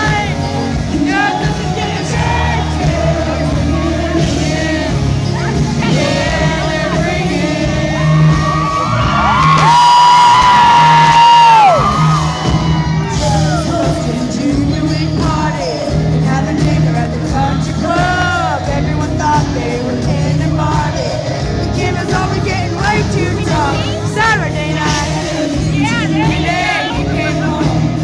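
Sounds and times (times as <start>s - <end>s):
country band playing: 0.0s - 28.0s
audience whooping and cheering: 5.3s - 14.0s.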